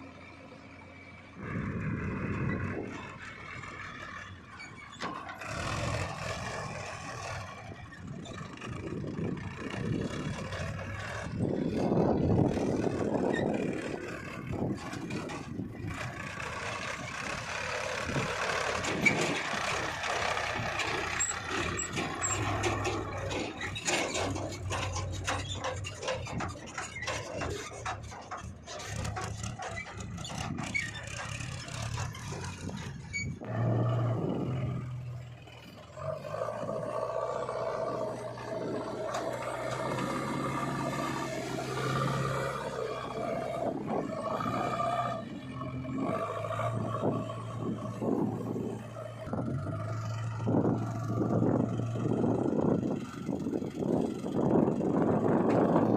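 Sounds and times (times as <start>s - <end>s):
diesel engines running under load: 0.0s - 55.9s
knocks and scrapes: 2.1s - 53.4s.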